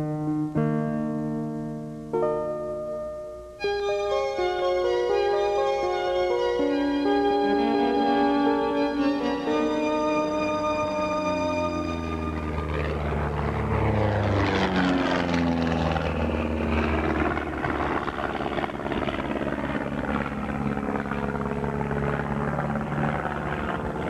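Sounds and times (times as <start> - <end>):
propeller airplanes flying by: 3.6 - 24.0.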